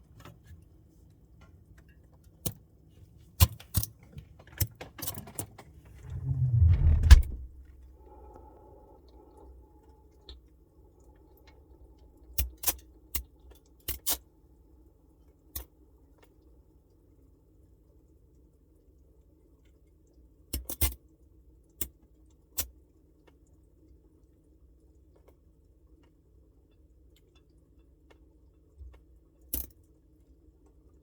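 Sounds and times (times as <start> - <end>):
refrigerator hum: 4.0 - 12.1
low rumbling knock: 6.0 - 7.7.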